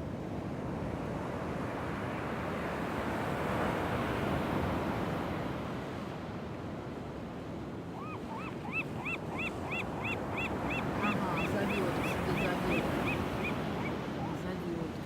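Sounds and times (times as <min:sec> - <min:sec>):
gull calling: 0:08.0 - 0:14.4
surf: 0:08.6 - 0:15.0.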